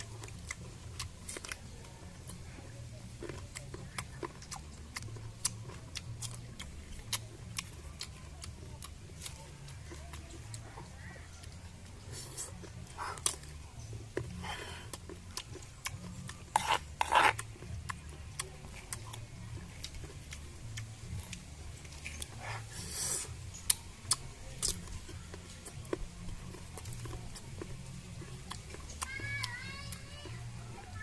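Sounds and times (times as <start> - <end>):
rasping scraping strokes: 16.5 - 17.4.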